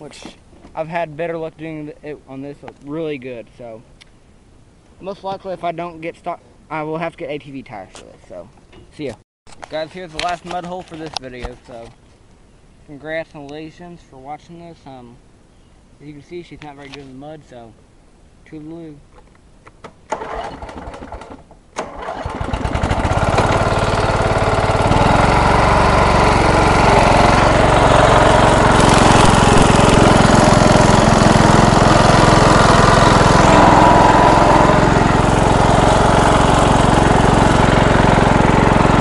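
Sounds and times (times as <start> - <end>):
lawn mower engine running: 20.1 - 39.0.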